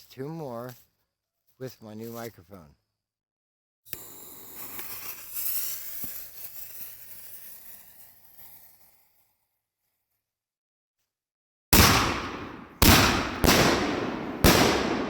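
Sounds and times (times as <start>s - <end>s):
fuses hissing and sizzling: 4.0s - 8.5s.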